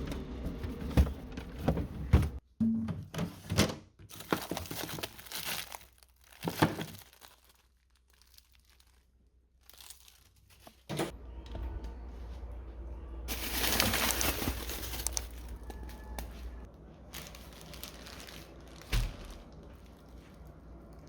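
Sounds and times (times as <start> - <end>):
plastic packaging crinkling: 4.1 - 10.9, 13.3 - 21.0.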